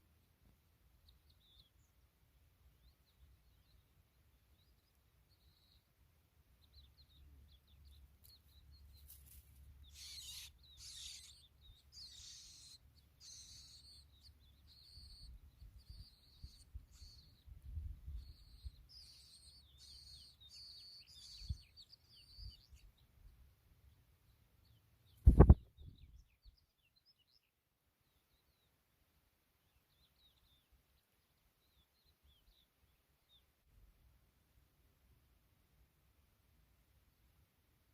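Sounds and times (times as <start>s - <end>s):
skylark chirping: 9.8s - 23.0s.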